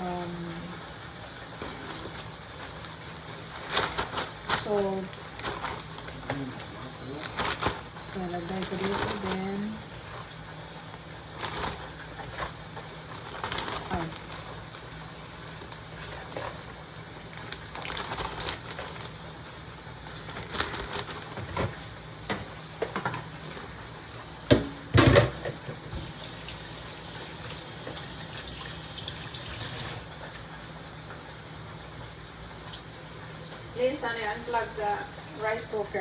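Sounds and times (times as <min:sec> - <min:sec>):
kitchenware knocks and clatters: 0:24.5 - 0:25.9
tap running into sink: 0:24.5 - 0:30.0.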